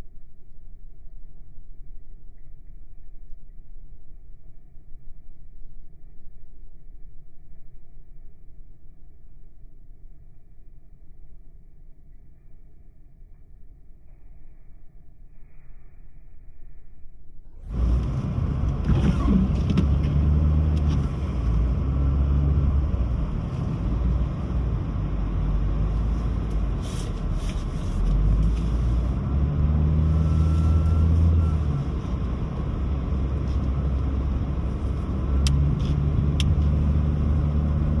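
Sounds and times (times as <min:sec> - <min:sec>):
car engine hum: 0:17.7 - 0:38.0
tyre and road noise: 0:17.7 - 0:38.0.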